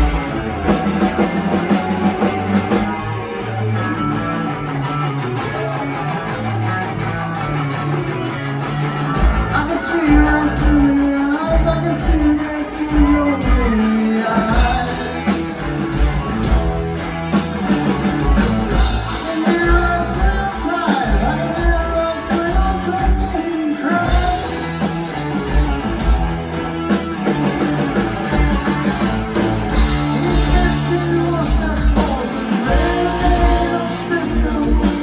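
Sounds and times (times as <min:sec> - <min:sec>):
electric guitar: 0:00.0 - 0:35.0
rock band playing: 0:00.0 - 0:35.0.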